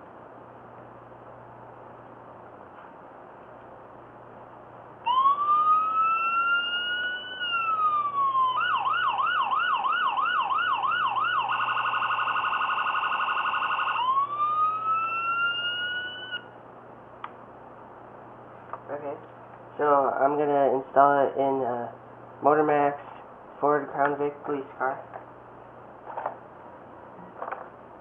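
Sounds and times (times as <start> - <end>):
electronic police siren: 5.0 - 16.5.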